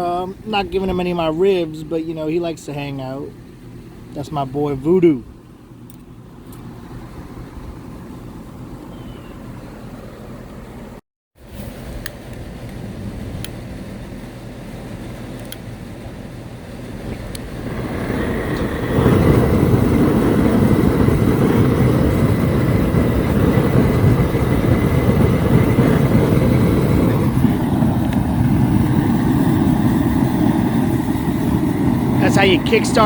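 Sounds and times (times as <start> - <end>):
gas burner flame roaring: 11.4 - 33.0.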